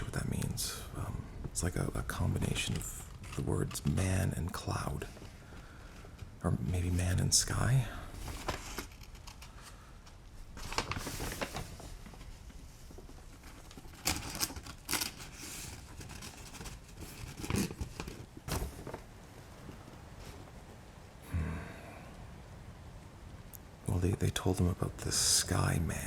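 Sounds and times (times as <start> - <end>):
paper rustling and crinkling: 1.4 - 20.6.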